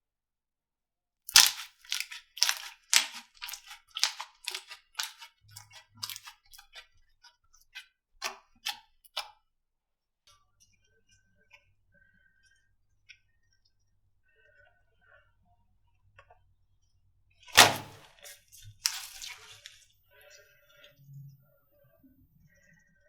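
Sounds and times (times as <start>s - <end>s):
slime squeezed crackling pops: 1.3s - 5.2s, 17.5s - 18.1s.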